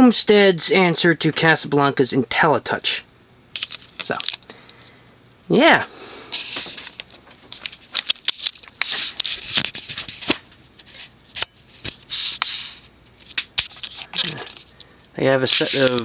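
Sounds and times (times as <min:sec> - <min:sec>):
scraping rustles: 0:06.4 - 0:14.8, 0:15.4 - 0:16.0.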